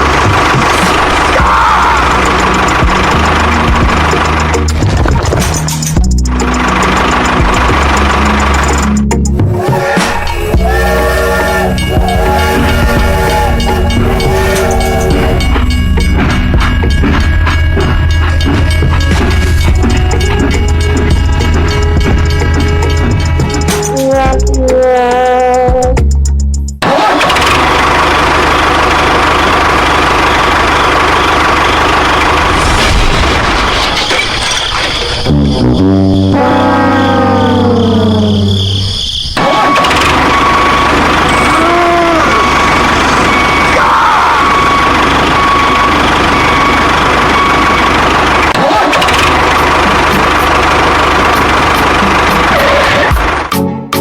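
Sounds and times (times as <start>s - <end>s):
motor running with whine: 0.0s - 24.8s, 39.4s - 53.5s.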